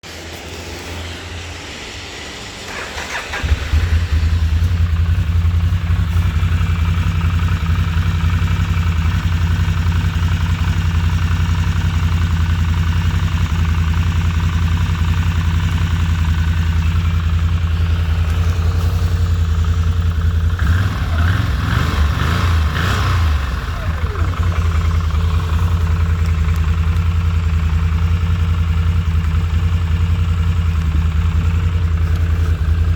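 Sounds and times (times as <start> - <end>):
engine cranking and idling: 2.5 - 32.9.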